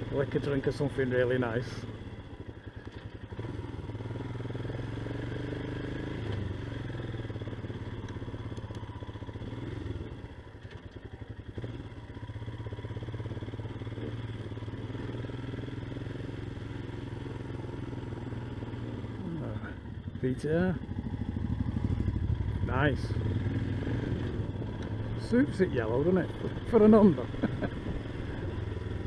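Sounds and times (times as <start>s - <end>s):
motorcycle engine running: 0.0s - 29.0s.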